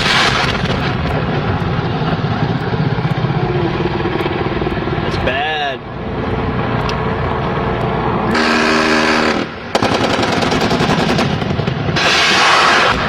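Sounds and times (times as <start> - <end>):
rotary cannon firing: 0.0 - 5.0, 8.3 - 13.0
steady tone: 0.0 - 9.8
helicopter cabin noise: 0.0 - 13.0.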